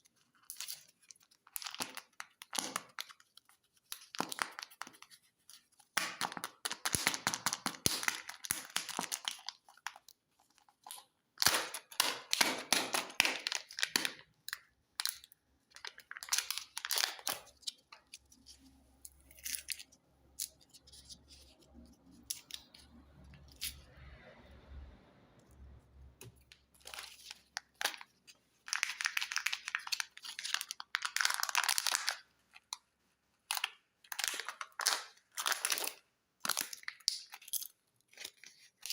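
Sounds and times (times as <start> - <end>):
foil wrapper tearing and crinkling: 0.4 - 10.1, 10.7 - 14.3, 15.0 - 18.2, 26.7 - 32.8, 33.5 - 38.9.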